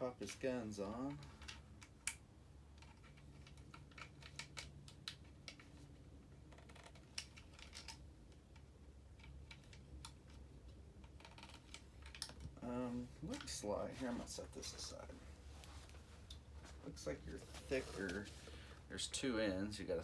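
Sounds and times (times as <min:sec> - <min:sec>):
plastic toy parts clicking: 0:01.1 - 0:10.4, 0:11.0 - 0:12.5.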